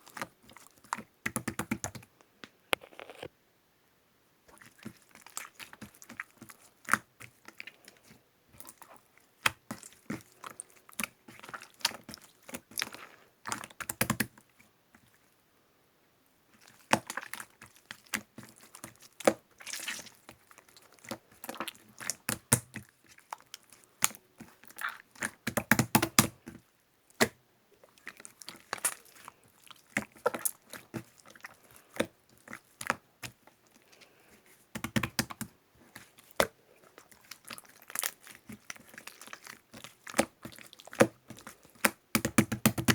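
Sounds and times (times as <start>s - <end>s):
slime being squished by hand: 16.6s - 33.6s, 34.8s - 42.9s.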